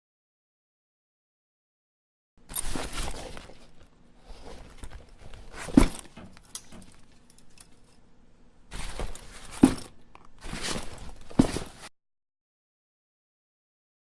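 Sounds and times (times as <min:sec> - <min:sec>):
rustling: 0:02.4 - 0:08.0, 0:08.7 - 0:11.9.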